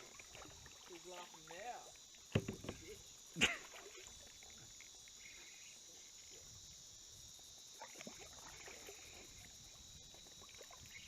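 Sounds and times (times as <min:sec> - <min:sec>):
high-pitched cicada chorus: 0:00.0 - 0:11.0
faint knocks: 0:02.3 - 0:02.9.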